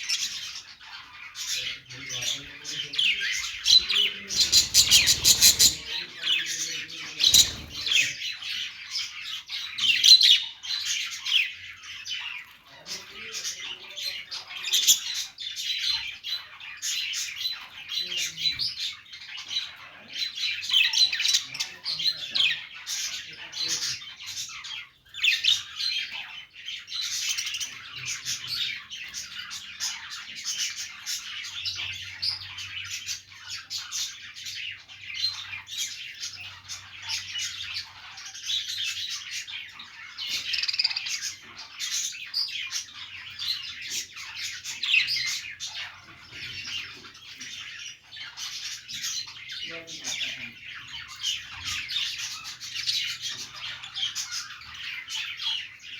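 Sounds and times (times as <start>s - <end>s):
parrots chattering and squawking: 0.0s - 55.9s.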